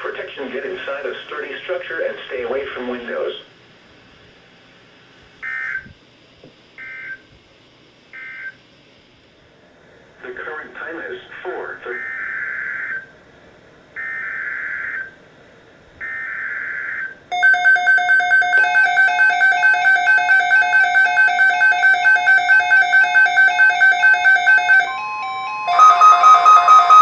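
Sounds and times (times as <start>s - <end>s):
steady tone: 17.3s - 27.0s
electronic alert beeping: 17.4s - 27.0s.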